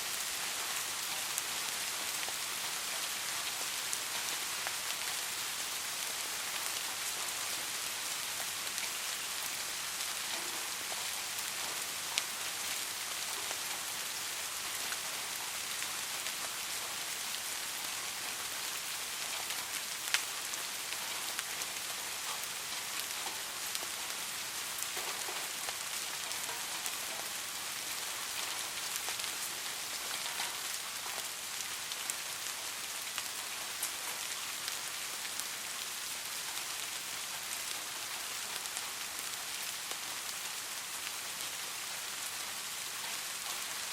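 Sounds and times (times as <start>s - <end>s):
soft steady rain: 0.0s - 43.9s
raindrops ticking: 24.8s - 36.4s.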